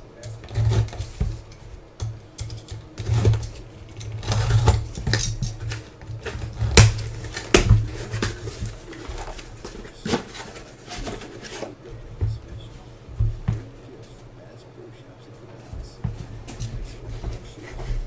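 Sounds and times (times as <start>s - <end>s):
packaging rustling: 0.2s - 13.1s.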